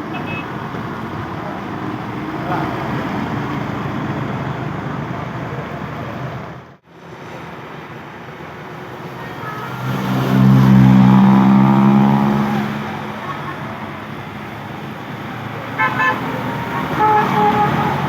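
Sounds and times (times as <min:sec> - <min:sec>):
road traffic passing: 0:00.0 - 0:18.0.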